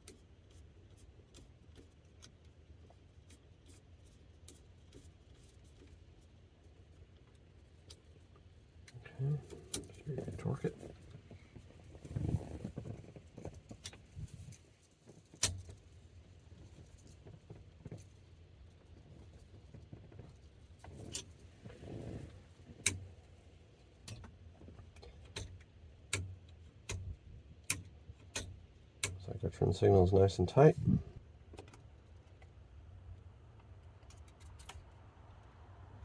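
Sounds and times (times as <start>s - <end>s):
faint low hum: 8.8s - 12.8s, 29.2s - 31.3s.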